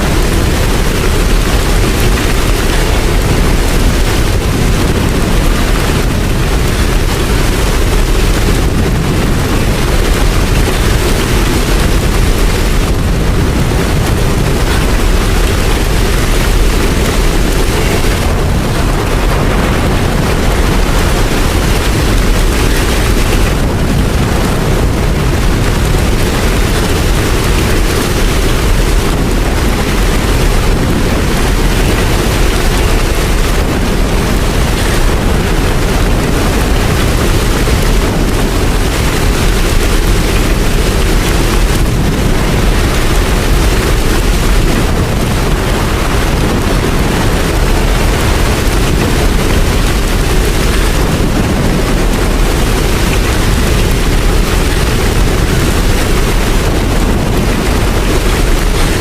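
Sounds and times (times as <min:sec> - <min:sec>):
deep low rumble: 0:00.0 - 0:59.0
heavy rain: 0:00.0 - 0:59.0.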